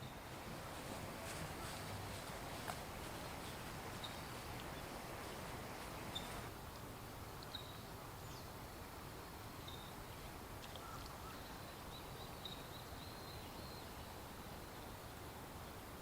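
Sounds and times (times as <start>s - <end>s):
steady outdoor hiss: 0.0s - 16.0s
songbird call notes: 3.9s - 5.0s, 5.9s - 6.5s, 7.4s - 8.5s, 9.6s - 15.0s.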